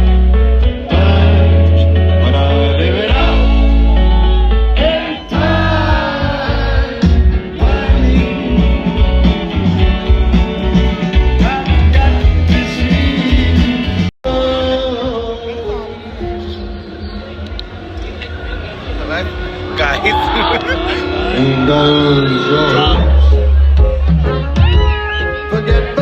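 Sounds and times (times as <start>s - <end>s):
music with singing and guitar: 0.0s - 17.6s, 21.1s - 26.0s.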